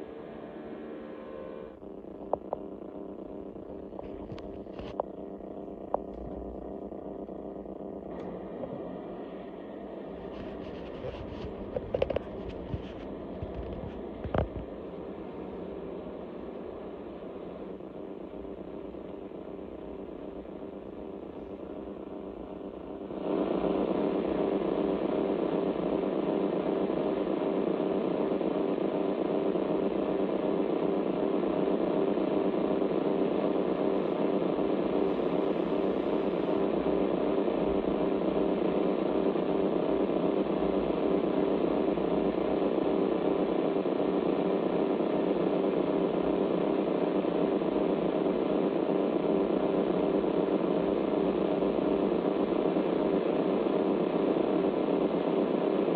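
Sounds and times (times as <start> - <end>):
pulsing radio buzz: 0.0 - 55.9
radio band hiss: 9.8 - 26.9, 33.4 - 55.9.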